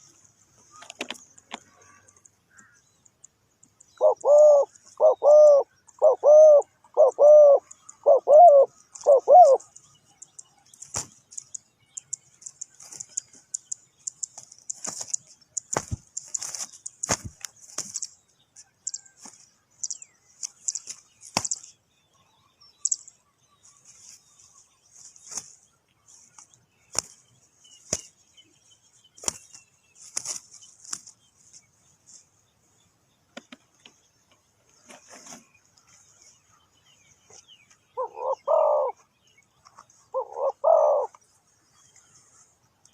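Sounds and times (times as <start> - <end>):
bird wings flapping: 10.8 - 11.2, 14.7 - 18.1, 29.2 - 31.1.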